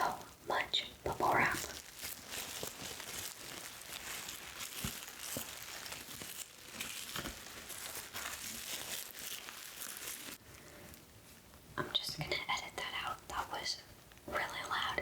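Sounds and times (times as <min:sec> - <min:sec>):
bubble wrap crinkling: 0:00.0 - 0:11.6.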